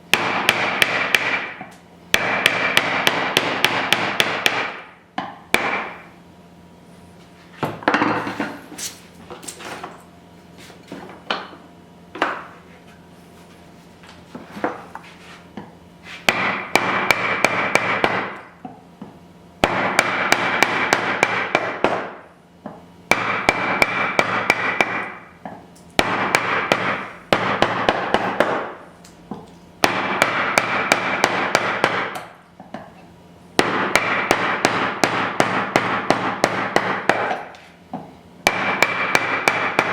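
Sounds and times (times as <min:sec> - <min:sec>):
wood chisel being struck: 0:00.1 - 0:06.0, 0:16.3 - 0:18.8, 0:19.6 - 0:32.8, 0:33.6 - 0:39.9.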